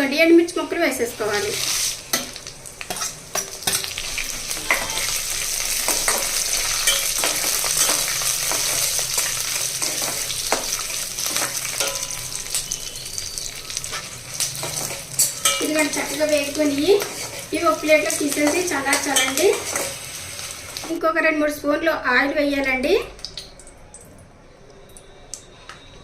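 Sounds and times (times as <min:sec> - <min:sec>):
peanuts sizzling in hot oil: 0:00.8 - 0:21.0.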